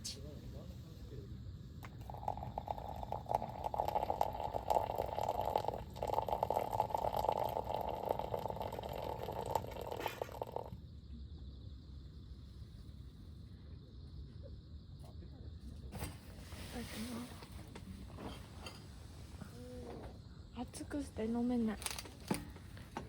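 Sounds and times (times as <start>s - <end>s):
liquid pouring: 1.8s - 10.8s.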